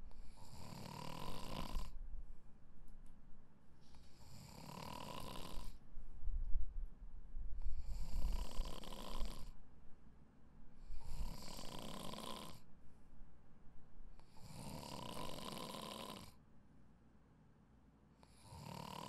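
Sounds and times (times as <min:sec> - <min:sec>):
person snoring: 0:00.2 - 0:02.0, 0:04.2 - 0:05.8, 0:07.8 - 0:09.5, 0:11.0 - 0:12.6, 0:14.3 - 0:16.4, 0:18.3 - 0:19.0.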